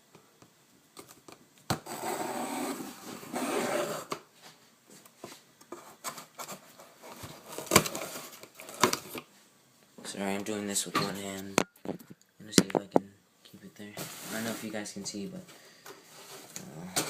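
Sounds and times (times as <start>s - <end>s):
rough rubbing and scraping: 1.9s - 4.1s.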